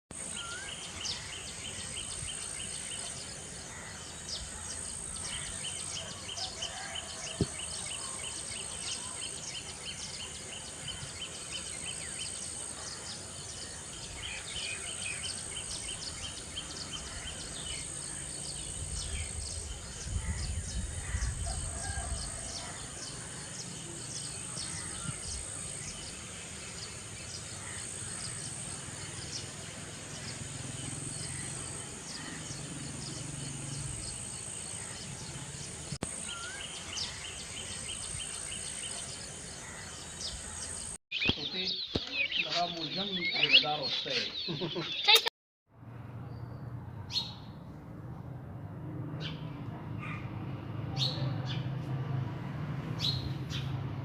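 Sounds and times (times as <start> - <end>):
poultry and peafowl calling: 5.4 - 7.6.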